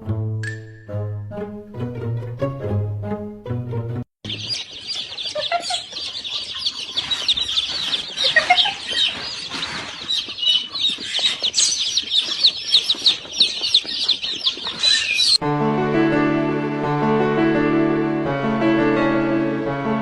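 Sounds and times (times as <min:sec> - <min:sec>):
lower bird calls: 0:04.2 - 0:15.4
many birds chirping: 0:04.2 - 0:15.4.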